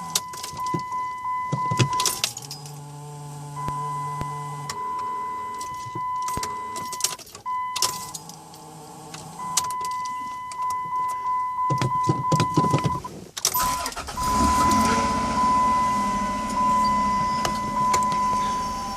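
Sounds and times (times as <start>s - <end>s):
rough low engine rumble: 0.8s - 11.4s, 13.0s - 18.9s
high electronic warning tone: 3.5s - 8.3s, 9.4s - 18.9s.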